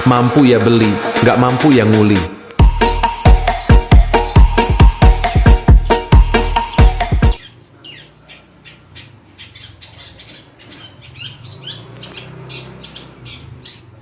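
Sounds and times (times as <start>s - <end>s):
dance music: 0.0s - 7.4s
bird chirps and harsh squawks: 2.8s - 14.0s.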